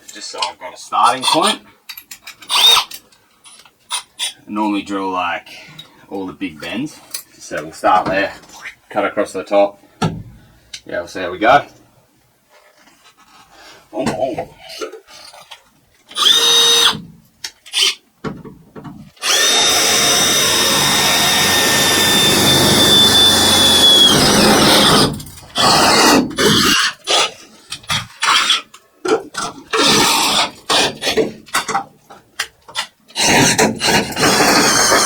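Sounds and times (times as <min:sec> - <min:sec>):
power drill drilling sheet metal: 0:02.5 - 0:02.9, 0:16.1 - 0:17.0, 0:19.2 - 0:26.8, 0:29.8 - 0:30.9, 0:33.2 - 0:35.0.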